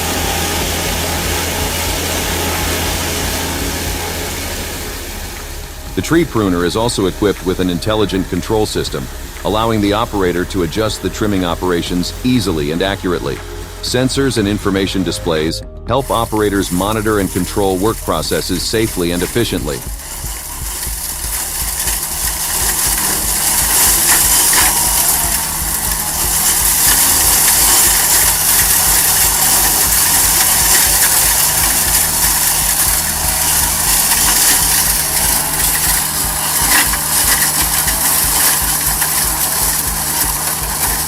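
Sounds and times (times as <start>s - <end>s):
hedge trimmer motor humming: 0.0s - 15.0s, 16.0s - 41.0s
spinning cutter head hissing: 16.1s - 41.0s.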